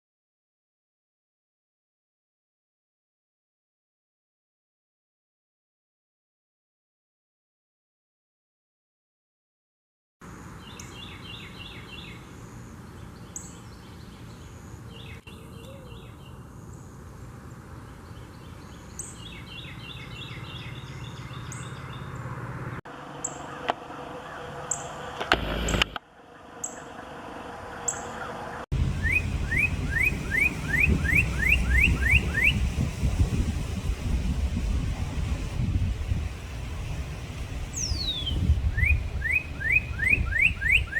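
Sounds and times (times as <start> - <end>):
songbirds calling: 10.4 - 25.4, 26.0 - 32.8, 37.3 - 40.9
low rumble: 23.4 - 39.2
rising whistled bird notes: 29.0 - 32.7, 37.7 - 40.9.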